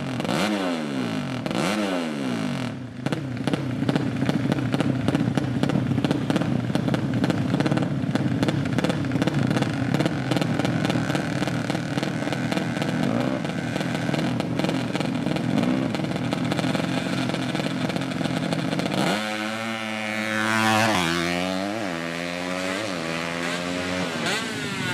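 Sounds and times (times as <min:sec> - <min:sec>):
motorcycle engine revving: 0:00.0 - 0:24.9.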